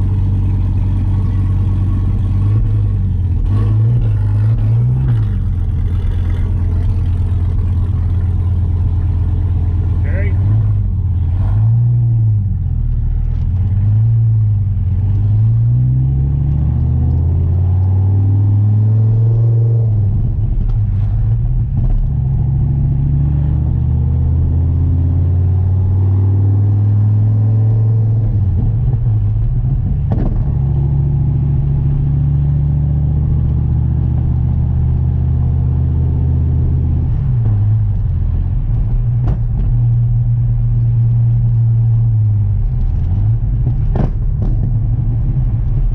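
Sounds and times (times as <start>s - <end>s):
car engine running: 0.0s - 18.0s, 28.2s - 35.6s, 36.2s - 45.9s.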